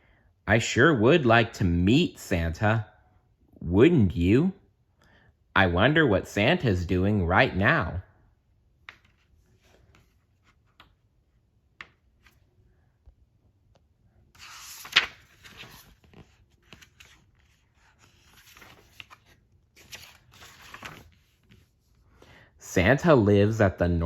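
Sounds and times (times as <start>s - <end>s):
paper rustling: 8.8s - 11.1s, 11.8s - 12.5s, 14.3s - 22.1s.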